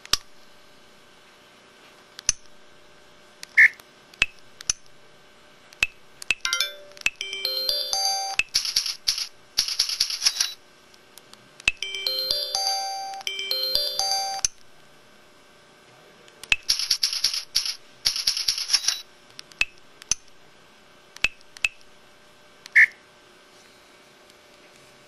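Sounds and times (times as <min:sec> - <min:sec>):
electronic phone melody: 0:06.5 - 0:08.5, 0:11.8 - 0:14.5.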